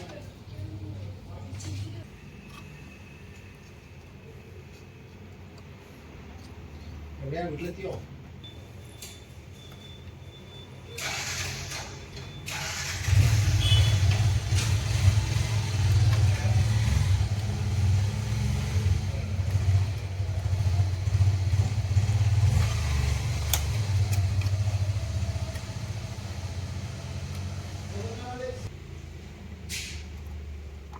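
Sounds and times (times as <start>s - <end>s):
low engine rumble: 12.5s - 29.4s.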